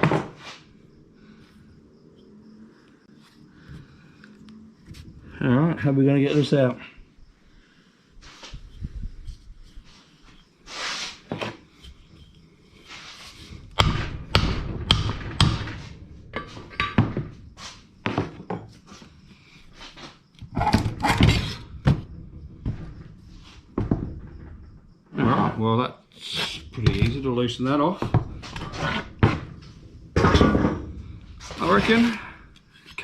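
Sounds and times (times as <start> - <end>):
metal knocks and clanks: 11.3 - 25.6, 26.6 - 33.0.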